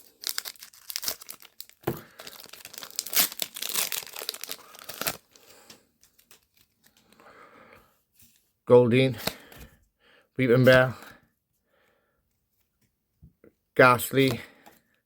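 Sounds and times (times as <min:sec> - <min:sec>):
foil wrapper tearing and crinkling: 0:00.0 - 0:05.4.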